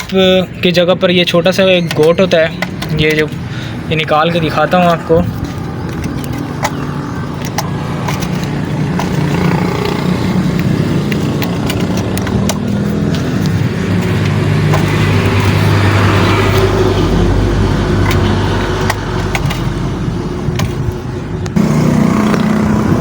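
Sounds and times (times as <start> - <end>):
vehicle engine running: 2.3 - 23.0
metallic clicks of parts handled: 5.2 - 15.7.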